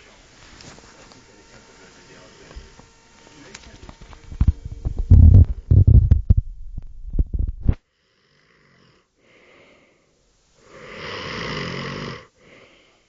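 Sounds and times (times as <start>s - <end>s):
man snoring: 7.9s - 13.0s.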